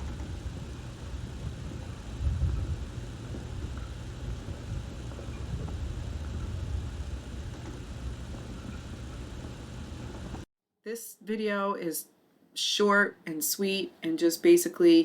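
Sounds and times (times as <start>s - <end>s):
wind buffeting microphone: 0.0s - 10.4s.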